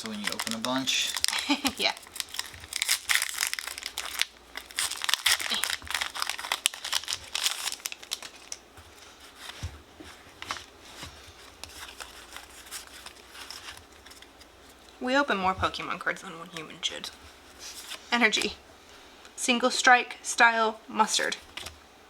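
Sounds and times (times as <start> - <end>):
foil wrapper crinkling and tearing: 0.0 - 9.6, 10.3 - 15.0.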